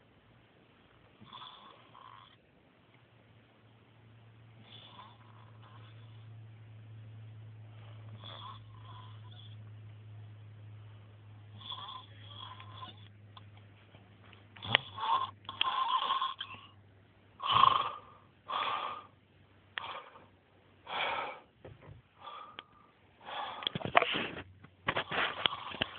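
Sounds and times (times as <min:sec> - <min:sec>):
steady low hum: 0:00.0 - 0:25.9
men snoring: 0:01.2 - 0:02.4, 0:04.6 - 0:06.3, 0:08.1 - 0:09.6, 0:11.5 - 0:13.1, 0:14.6 - 0:16.7, 0:17.4 - 0:19.1
noisy breaths: 0:04.4 - 0:06.6, 0:07.4 - 0:09.7, 0:10.6 - 0:16.8, 0:17.4 - 0:25.9.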